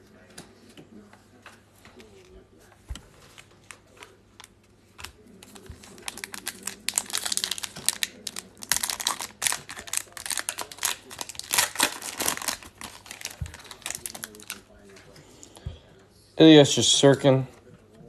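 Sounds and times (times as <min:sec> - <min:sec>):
plastic wrapper tearing and crinkling: 0:04.4 - 0:14.8.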